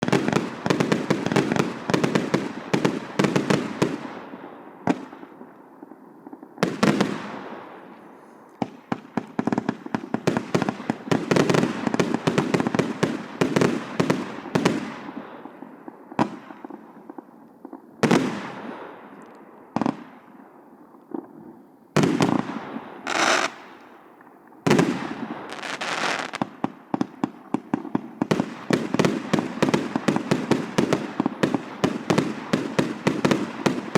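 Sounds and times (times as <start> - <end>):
loud firework bangs: 0.0 - 5.5, 6.6 - 15.6, 22.0 - 24.0, 24.6 - 33.9
fireworks cake firing: 22.0 - 24.0, 24.6 - 33.9.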